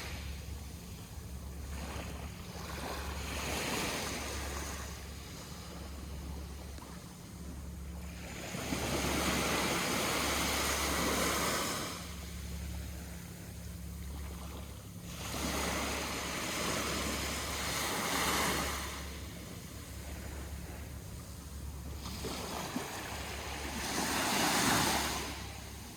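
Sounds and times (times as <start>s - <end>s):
sea waves washing onto shore: 0.0s - 0.8s, 8.1s - 13.3s, 14.2s - 21.0s, 21.8s - 25.9s
steady low rumble: 0.0s - 25.9s.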